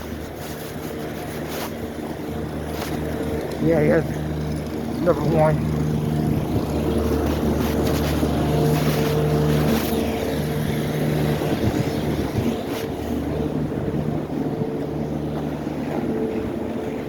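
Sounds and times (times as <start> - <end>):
truck engine passing: 1.8 - 17.0.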